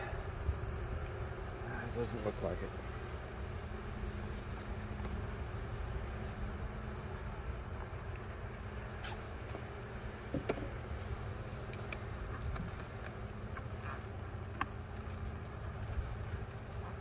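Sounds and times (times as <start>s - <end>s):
honeybees buzzing: 0.0s - 17.0s.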